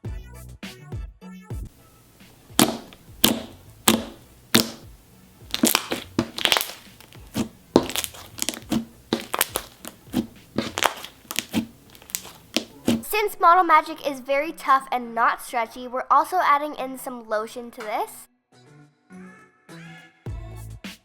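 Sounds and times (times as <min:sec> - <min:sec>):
slime crackling and popping: 0:02.2 - 0:13.1.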